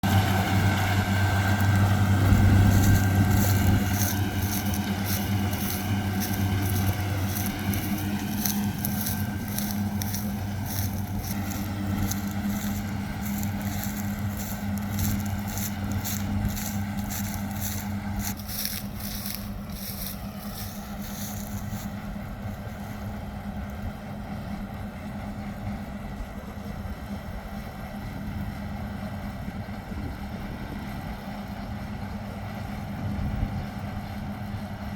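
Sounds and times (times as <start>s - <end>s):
machine hum: 0.0s - 27.8s.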